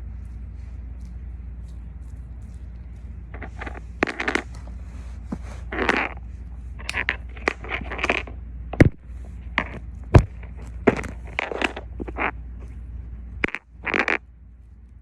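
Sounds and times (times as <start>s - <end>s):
steady low hum: 0.0s - 15.0s
squishy toy crackling and crinkling: 0.1s - 4.8s.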